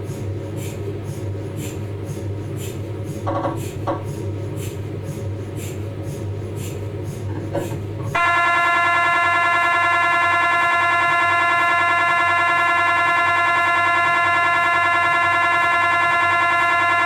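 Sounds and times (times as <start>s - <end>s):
mri scanner buzzing: 7.0s - 17.0s.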